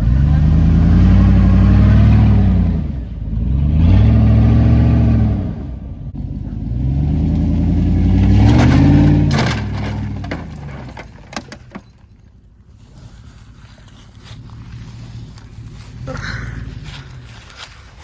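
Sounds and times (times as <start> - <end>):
truck engine revving: 0.0 - 11.7, 13.0 - 18.0
rattling clatter: 7.8 - 12.3.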